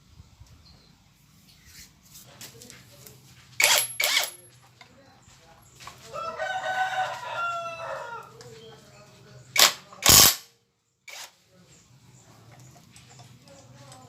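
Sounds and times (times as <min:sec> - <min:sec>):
rooster crowing: 0:06.0 - 0:08.4.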